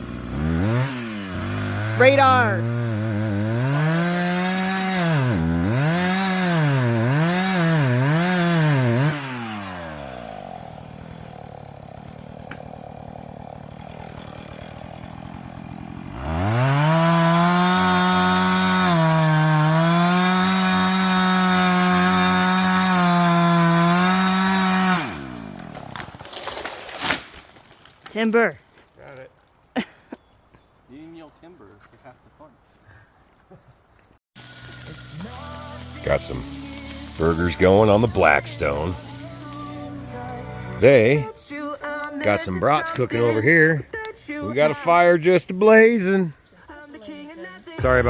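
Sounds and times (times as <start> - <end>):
chainsaw revving: 0.0 - 27.3, 34.4 - 41.3.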